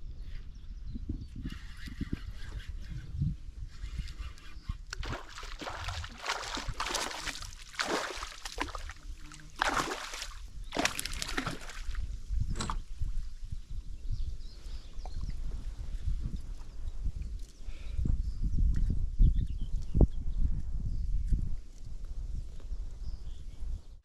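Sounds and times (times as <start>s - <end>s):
water splashing and sloshing: 4.9s - 12.0s.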